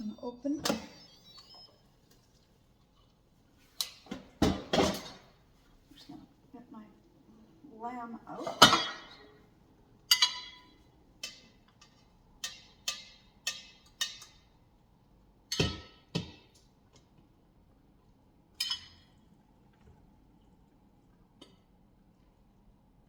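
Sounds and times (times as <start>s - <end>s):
utensil clinking on metal pot: 10.1s - 14.5s, 18.6s - 19.1s.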